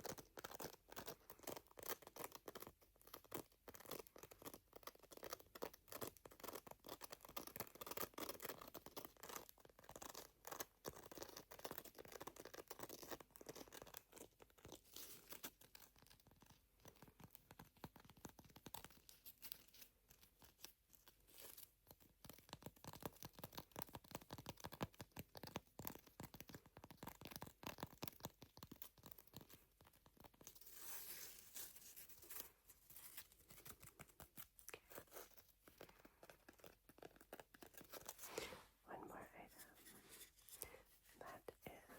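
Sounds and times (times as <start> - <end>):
nail file scratching: 0.0 - 14.2.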